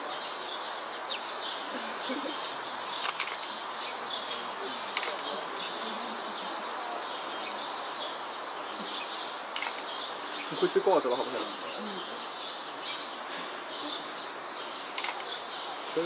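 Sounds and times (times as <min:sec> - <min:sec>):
steady background noise: 0:00.0 - 0:16.0
sharp clicks: 0:03.0 - 0:03.5, 0:04.9 - 0:05.3, 0:09.5 - 0:09.9, 0:14.9 - 0:15.4.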